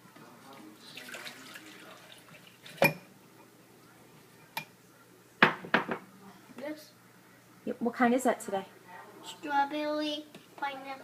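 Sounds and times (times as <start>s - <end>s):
milk pouring into blender jar: 0.9s - 2.7s.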